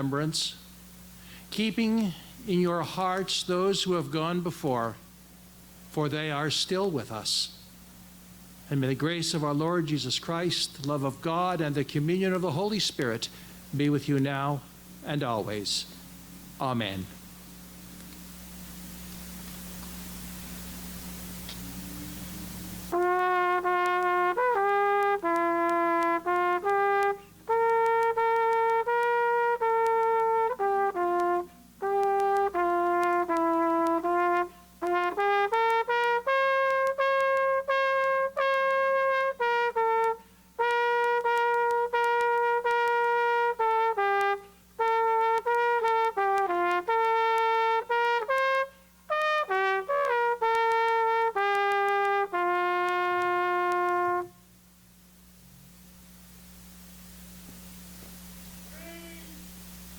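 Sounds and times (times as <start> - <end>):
solo trumpet slow melody: 18.4 - 54.7.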